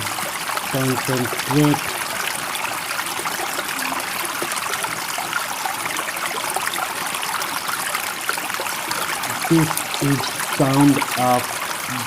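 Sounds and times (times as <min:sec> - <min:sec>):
stream water trickling: 0:00.0 - 0:12.0.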